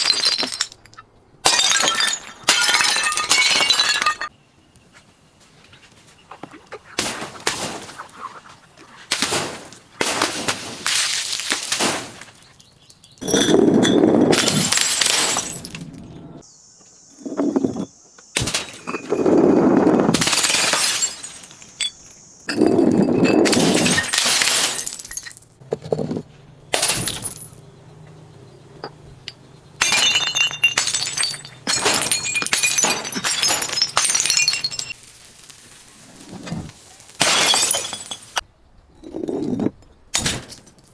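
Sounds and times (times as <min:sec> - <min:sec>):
glass shattering and crunching: 0:00.0 - 0:04.3, 0:09.3 - 0:16.1, 0:18.4 - 0:19.4, 0:20.1 - 0:25.6, 0:26.7 - 0:27.6, 0:29.3 - 0:38.4, 0:39.4 - 0:40.9.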